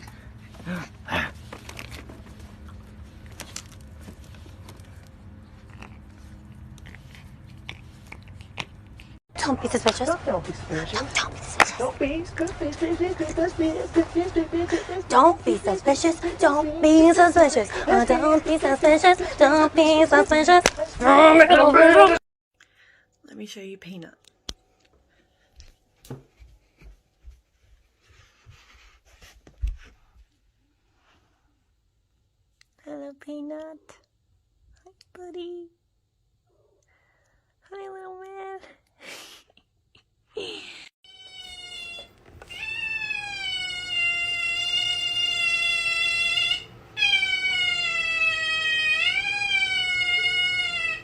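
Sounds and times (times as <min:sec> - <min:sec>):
scratching and rustling: 0:01.3 - 0:09.2
cat yowling: 0:41.1 - 0:51.0.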